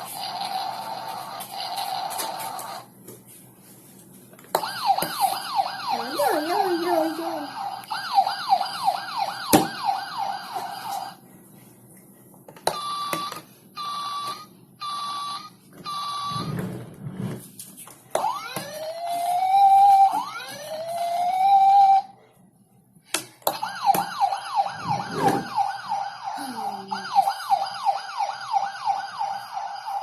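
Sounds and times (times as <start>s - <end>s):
toy siren yelp: 4.6s - 11.2s, 12.8s - 16.4s, 18.2s - 22.1s, 23.6s - 30.0s.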